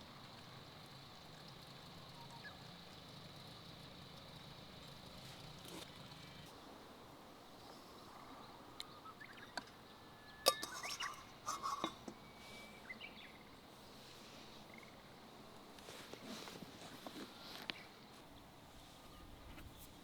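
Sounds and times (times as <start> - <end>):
sharp clicks and clinks: 10.5 - 12.3.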